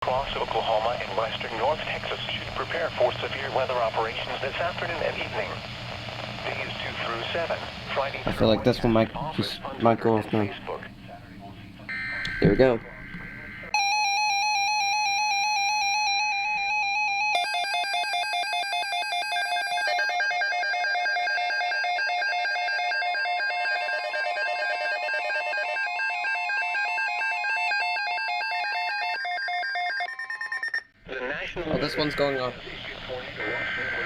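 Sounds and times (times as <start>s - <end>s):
rapid warbling alarm beeps: 11.9s - 30.9s.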